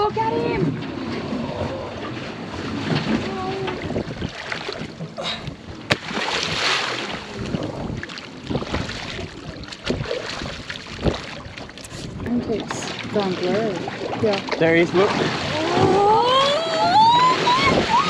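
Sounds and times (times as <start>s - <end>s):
water sounds: 0.0s - 18.0s
wind noise: 16.8s - 18.0s.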